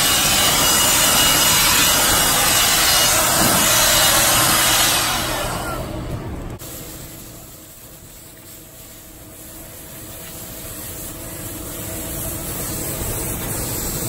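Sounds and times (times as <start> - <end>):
water hose spraying: 0.0 - 5.8, 6.5 - 14.0
low rumble: 0.0 - 7.2.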